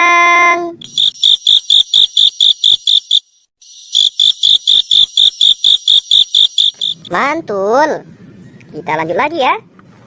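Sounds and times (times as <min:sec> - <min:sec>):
grasshopper chirping: 0:00.8 - 0:07.3.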